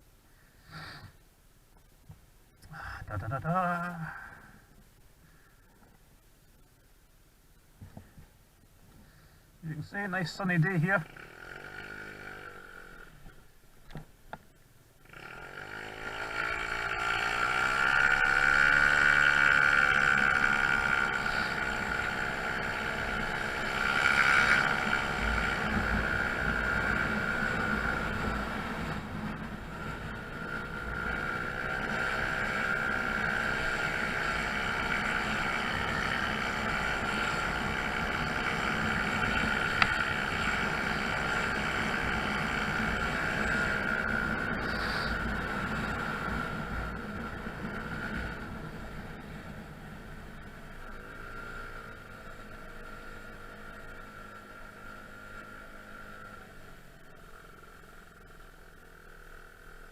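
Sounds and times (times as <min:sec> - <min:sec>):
scooter engine accelerating: 0:11.0 - 0:13.4, 0:15.0 - 0:59.9.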